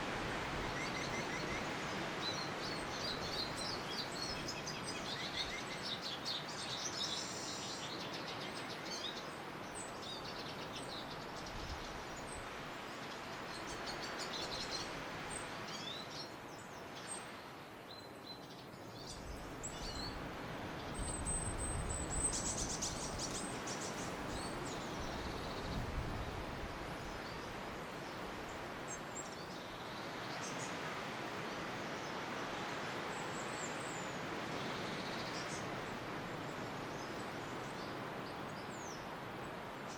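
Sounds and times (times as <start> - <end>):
small birds chirping: 0.7 - 17.3, 17.9 - 26.4.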